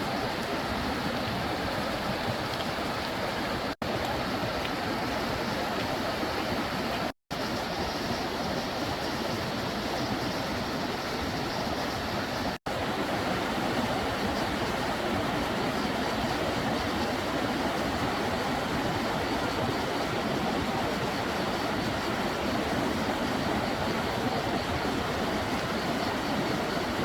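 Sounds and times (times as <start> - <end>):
mountain stream rushing: 0.0 - 27.0.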